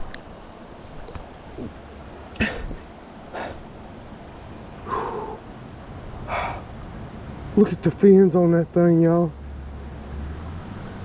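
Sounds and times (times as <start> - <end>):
creek rushing: 0.0 - 11.0
man huffing breathily: 2.4 - 3.6, 4.8 - 5.4.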